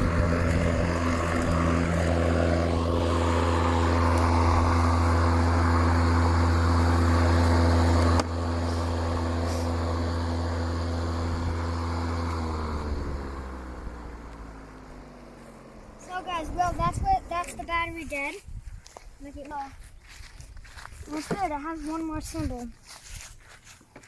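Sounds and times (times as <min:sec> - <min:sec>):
electric lawnmower humming: 0:00.0 - 0:18.4.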